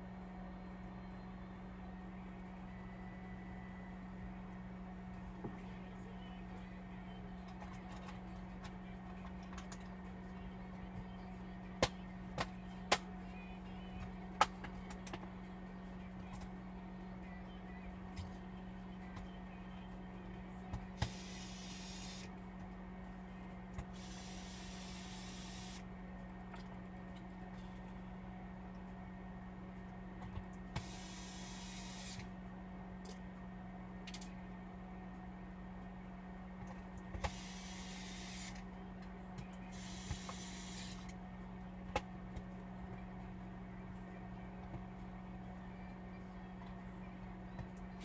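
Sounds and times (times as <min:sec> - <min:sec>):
low hum: 0:00.0 - 0:22.3
steady low hum: 0:00.0 - 0:48.0.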